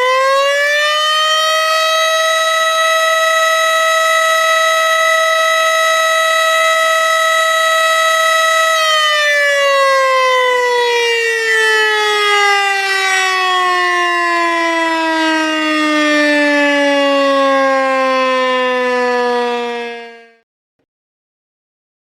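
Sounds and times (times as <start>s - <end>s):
tornado siren winding down: 0.0s - 20.4s.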